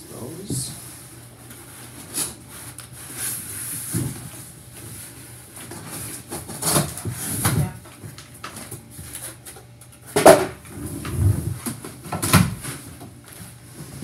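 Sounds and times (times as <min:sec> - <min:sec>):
packaging rustling and scraping: 0:01.4 - 0:10.0.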